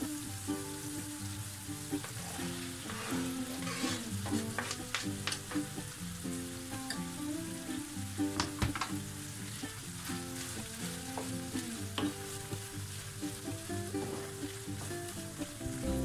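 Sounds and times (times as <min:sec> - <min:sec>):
food sizzling in a frying pan: 0:00.0 - 0:16.0
soft background music: 0:00.0 - 0:16.0
utensil clicking against pan: 0:02.8 - 0:05.9, 0:08.3 - 0:14.9.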